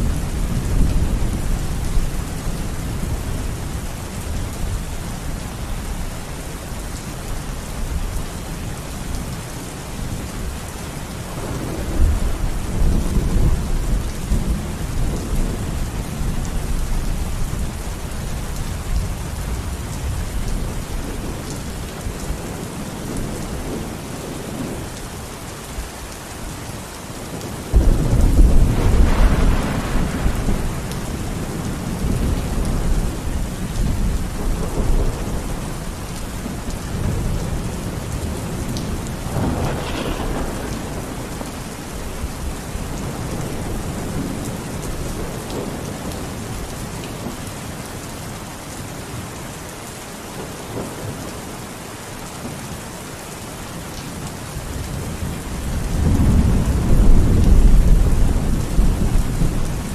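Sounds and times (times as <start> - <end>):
steady rain falling: 0.0 - 59.9
rolling thunder: 11.4 - 17.8, 27.7 - 46.5, 54.9 - 59.9.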